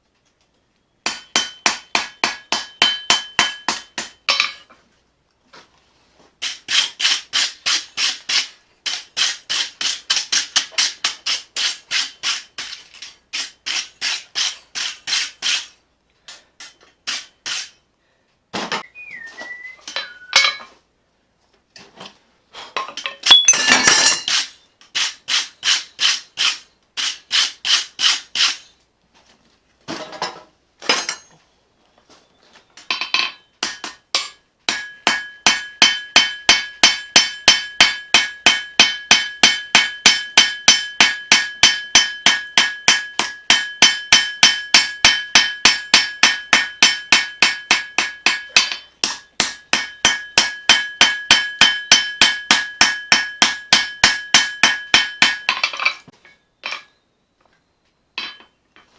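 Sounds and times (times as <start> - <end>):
hammer ringing on anvil: 1.1 - 4.2, 23.3 - 23.8, 34.7 - 55.6.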